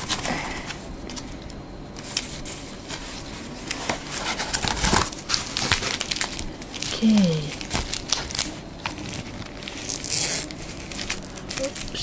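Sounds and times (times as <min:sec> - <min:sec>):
packaging rustling and crinkling: 0:00.0 - 0:12.0.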